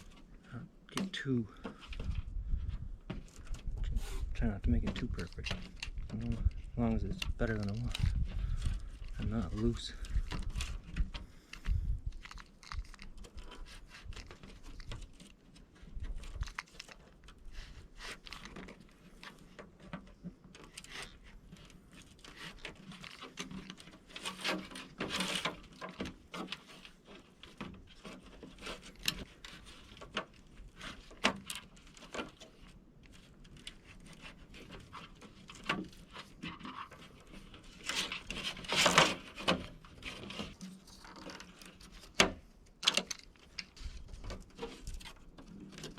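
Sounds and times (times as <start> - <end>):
screen roller scraping: 20.6 - 42.3.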